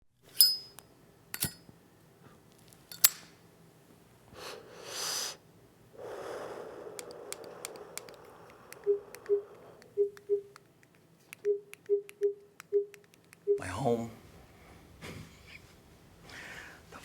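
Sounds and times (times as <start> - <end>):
lighter lid clicks: 1.4 - 1.6, 2.9 - 3.4
breathy rushes of air: 4.4 - 10.0.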